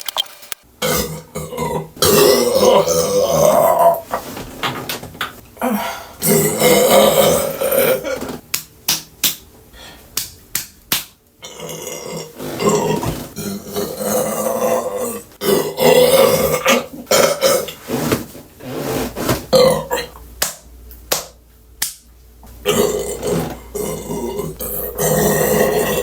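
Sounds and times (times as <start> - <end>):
woman belching: 0.8 - 4.0, 6.2 - 8.2, 22.7 - 26.0.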